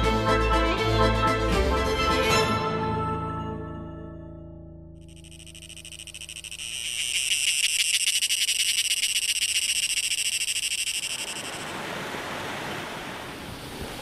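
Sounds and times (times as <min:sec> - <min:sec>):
animal high pulsing trill: 0:05.0 - 0:11.8.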